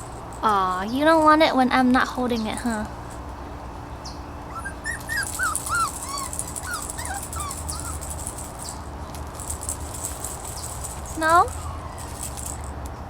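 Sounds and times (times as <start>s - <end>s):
puppy whimpering: 4.5s - 8.6s, 11.2s - 12.3s.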